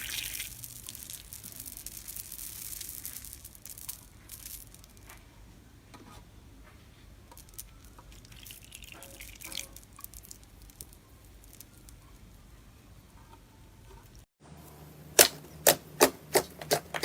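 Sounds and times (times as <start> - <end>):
slime squeezed by hand: 0.0 - 0.6.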